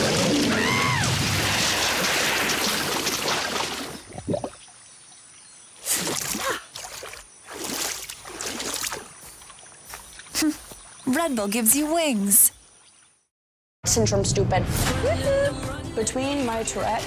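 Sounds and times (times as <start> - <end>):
water rushing and splashing: 0.0 - 4.7, 5.9 - 11.3.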